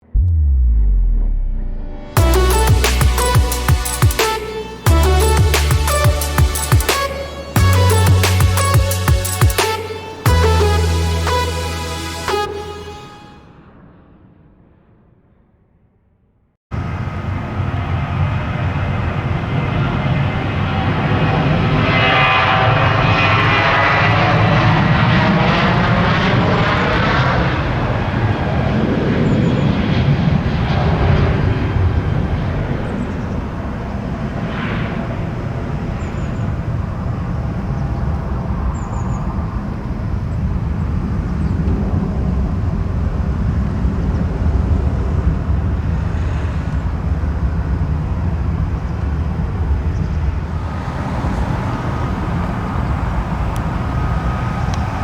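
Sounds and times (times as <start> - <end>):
jet airliner passing: 16.8 - 55.0.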